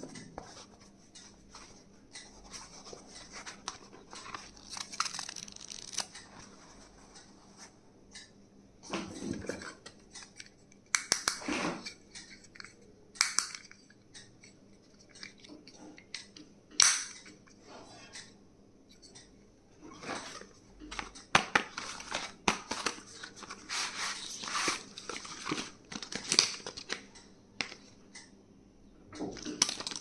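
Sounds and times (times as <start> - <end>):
clicks and taps of handled items: 9.4 - 17.4
packaging rustling and crinkling: 21.7 - 27.1, 29.4 - 30.0.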